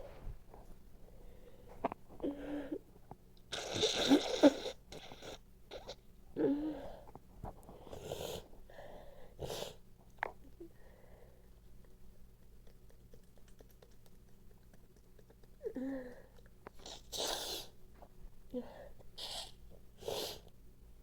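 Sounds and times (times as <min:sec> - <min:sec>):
noisy nasal bursts: 0:03.5 - 0:06.0, 0:16.8 - 0:17.7.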